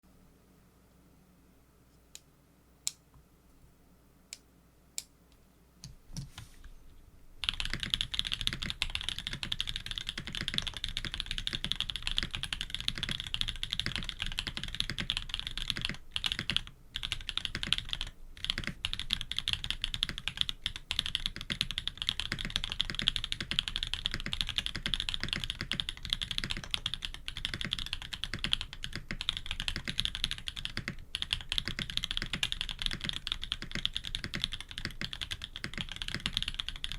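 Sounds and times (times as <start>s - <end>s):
mechanical keyboard typing: 7.4s - 36.9s.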